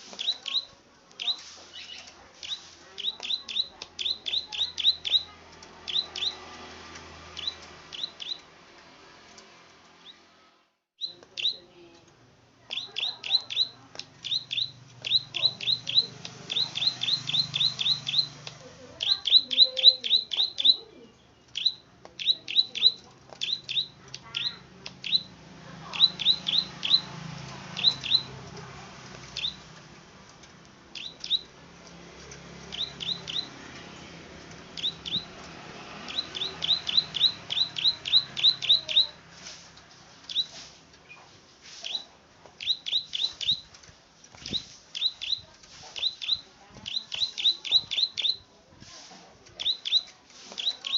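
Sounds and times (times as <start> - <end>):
bird calling with clicking notes: 0.1 - 8.5, 12.7 - 25.3, 25.9 - 27.1, 27.8 - 28.4, 29.1 - 29.8, 30.9 - 31.6, 32.3 - 33.6, 34.8 - 35.4, 36.0 - 39.2, 40.3 - 41.2, 41.8 - 48.5, 49.5 - 50.9.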